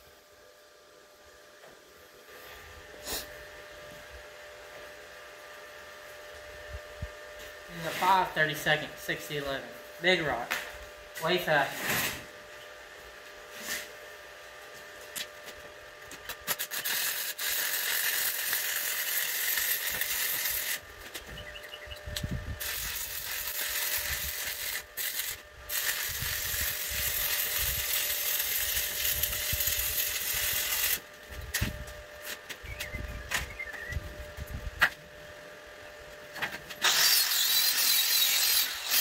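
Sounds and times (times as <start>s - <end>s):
welding arc crackling and hissing: 2.4s - 3.4s, 7.7s - 12.3s, 16.2s - 21.3s, 22.0s - 33.4s, 36.8s - 39.0s.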